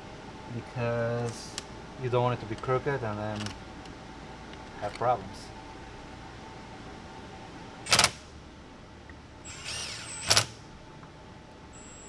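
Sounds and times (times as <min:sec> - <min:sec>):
power screwdriver whirring: 0:09.5 - 0:10.6.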